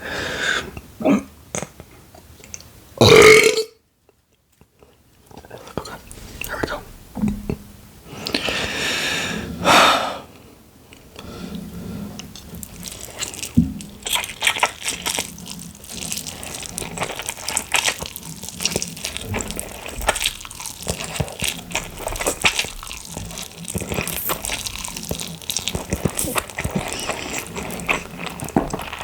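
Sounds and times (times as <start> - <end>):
person slurping and chewing noodles: 11.5 - 29.0.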